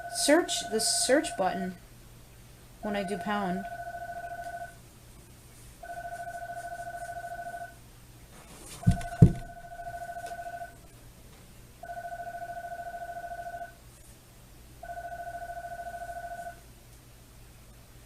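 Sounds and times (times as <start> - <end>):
warbling telephone ringing tone: 0.0 - 1.7, 2.8 - 4.8, 5.8 - 7.8, 8.9 - 10.9, 11.8 - 13.8, 14.8 - 16.6
dull thumps: 8.8 - 9.6.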